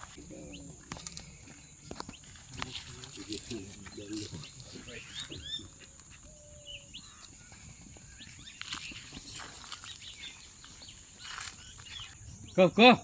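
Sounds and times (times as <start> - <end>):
faint rustles and clicks: 0.0 - 12.2
bird chirps: 0.0 - 13.0.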